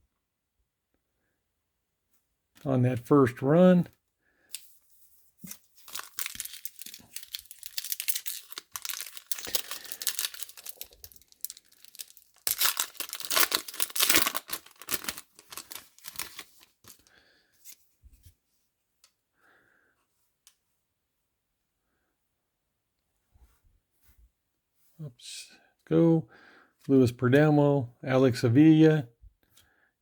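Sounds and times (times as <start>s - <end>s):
card pack wrapper tearing and crinkling: 5.4s - 17.1s.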